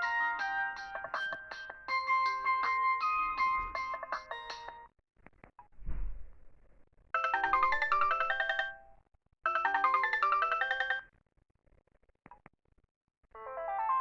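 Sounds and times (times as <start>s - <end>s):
polyphonic ringtone melody: 0.0s - 4.9s, 7.2s - 8.9s, 9.5s - 11.1s
low thump: 5.8s - 6.3s.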